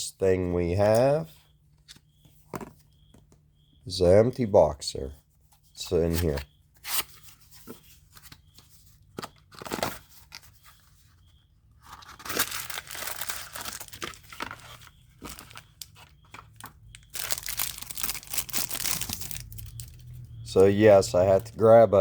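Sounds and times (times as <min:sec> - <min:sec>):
packaging crinkling and tearing: 0:11.9 - 0:20.2.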